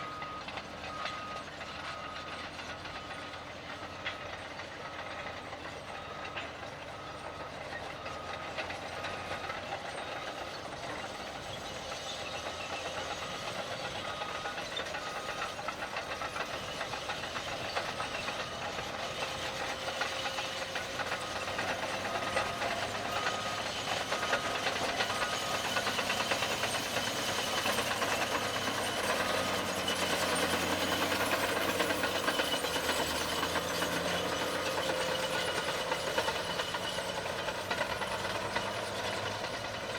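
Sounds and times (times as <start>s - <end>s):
reverse alarm beeps: 0.0s - 3.3s, 13.0s - 39.6s
bulldozer diesel engine under load: 0.0s - 39.9s
track clatter: 0.0s - 39.9s.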